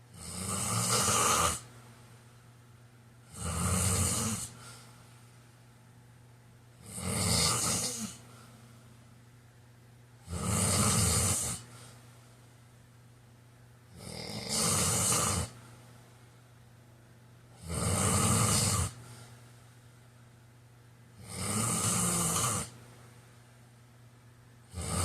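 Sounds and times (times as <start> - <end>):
man snoring: 0.1 - 1.6, 3.3 - 4.6, 6.8 - 8.2, 10.2 - 11.7, 14.0 - 15.6, 17.6 - 19.0, 21.2 - 22.8, 24.7 - 25.0.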